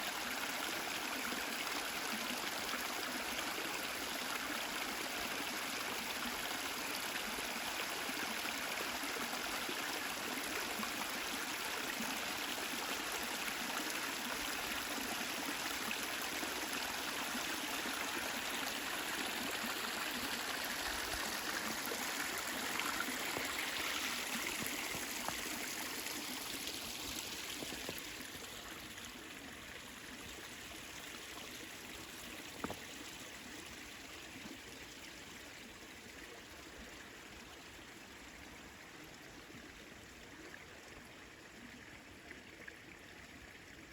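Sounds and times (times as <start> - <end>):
stream water rushing: 0.0 - 32.8.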